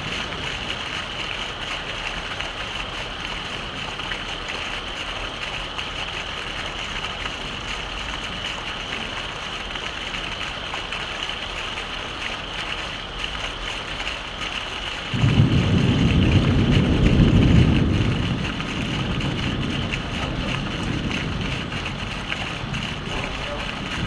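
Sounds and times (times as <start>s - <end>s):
thunder rumbling: 0.0s - 4.1s, 15.1s - 24.0s
heavy rain: 0.0s - 24.0s.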